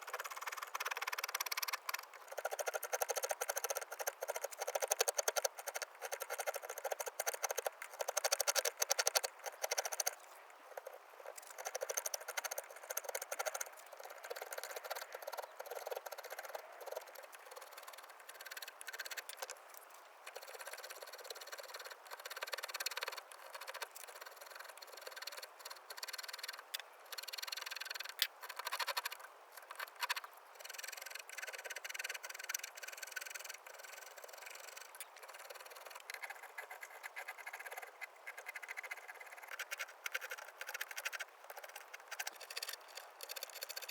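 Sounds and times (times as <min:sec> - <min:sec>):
hand carving tools cutting wood: 0:00.1 - 0:10.2.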